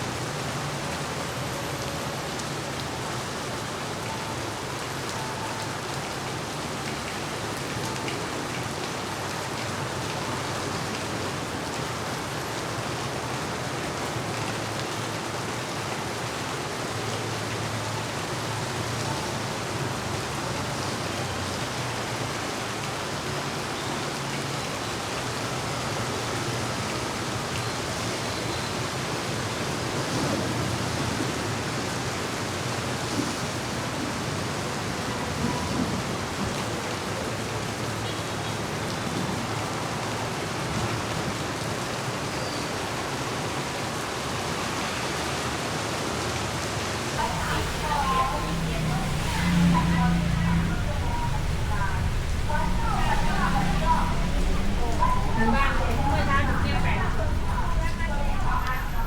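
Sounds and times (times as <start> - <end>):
heavy rain falling: 0.0 - 59.0
low steady hum: 47.2 - 59.0.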